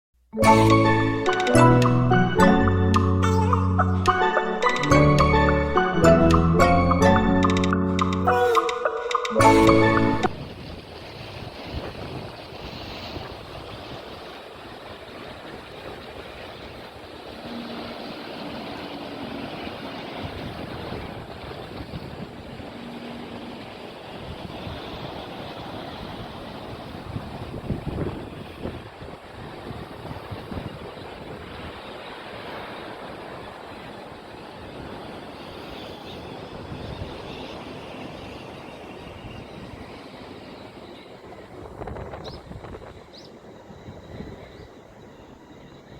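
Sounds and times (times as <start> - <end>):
sea waves washing on shore: 8.3 - 38.0
wind buffeting microphone: 24.2 - 31.8, 41.3 - 44.9.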